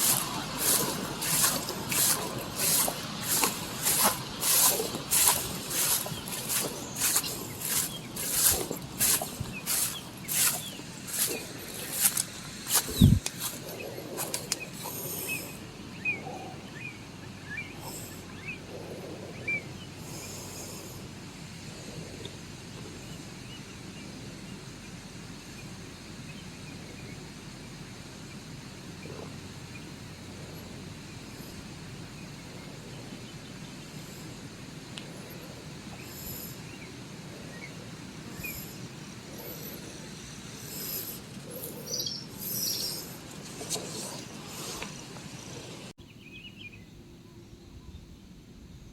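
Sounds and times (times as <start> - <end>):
bird chirps: 0.0 - 18.6, 37.5 - 44.9
low rushing background: 0.0 - 23.6.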